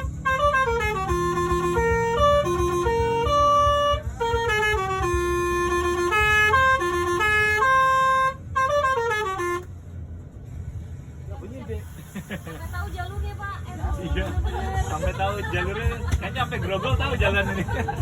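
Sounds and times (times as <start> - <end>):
musical air horn playing a tune: 0.0 - 9.7
diesel engine rumble: 0.0 - 18.0.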